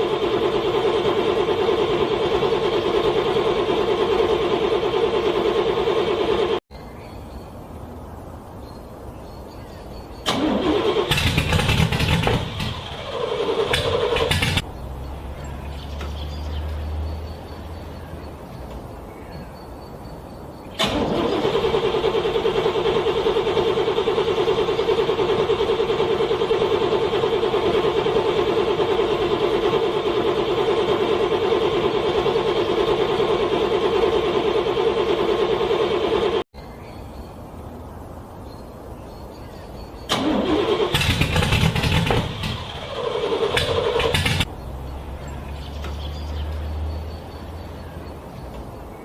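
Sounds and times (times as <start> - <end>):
car starter cranking: 0.0 - 6.6, 10.2 - 18.8, 20.7 - 36.4, 40.1 - 47.6.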